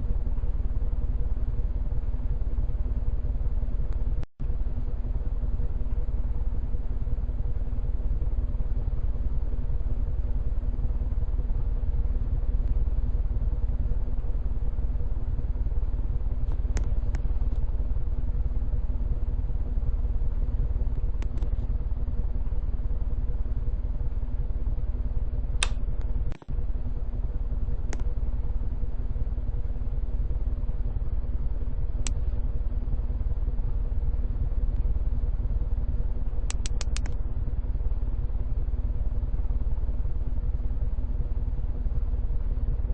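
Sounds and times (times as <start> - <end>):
ceiling fan running: 0.0 - 42.9
faint clicks: 36.5 - 37.2.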